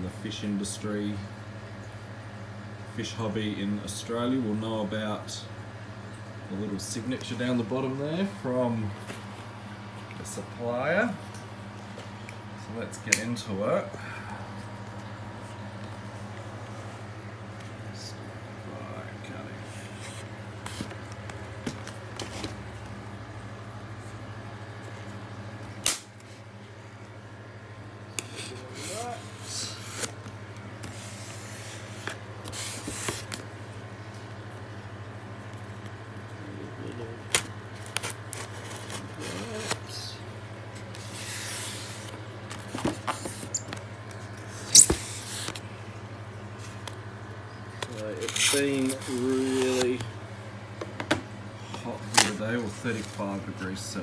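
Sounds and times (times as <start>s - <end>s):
steady low hum: 0.0s - 54.0s
packaging rustling and scraping: 19.6s - 22.6s, 28.2s - 33.5s, 37.4s - 40.0s, 40.7s - 45.6s, 47.8s - 50.1s, 52.0s - 53.4s
loud sharp snap: 25.8s - 26.1s.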